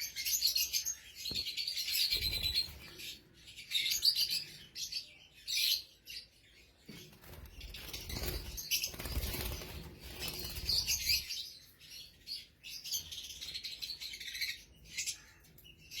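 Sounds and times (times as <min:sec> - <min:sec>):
lovebirds chirping: 0:00.0 - 0:16.0
wings flapping: 0:07.1 - 0:11.2.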